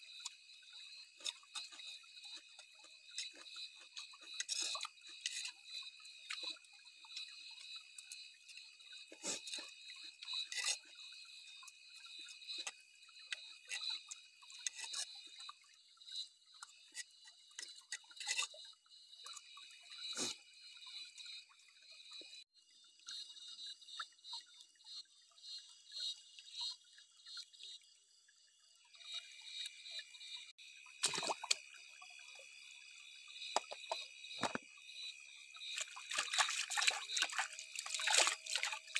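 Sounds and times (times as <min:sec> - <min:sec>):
water drips: 0:30.9 - 0:32.5, 0:35.6 - 0:38.9.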